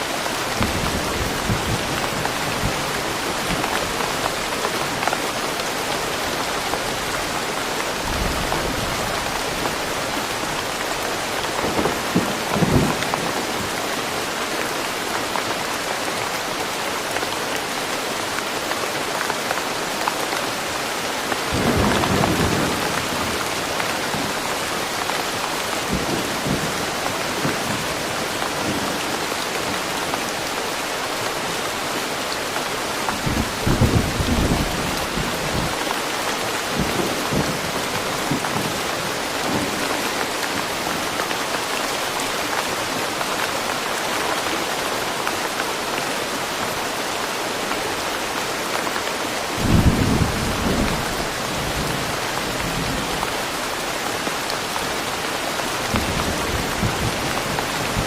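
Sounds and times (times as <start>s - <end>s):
steady rain falling: 0.0s - 58.0s.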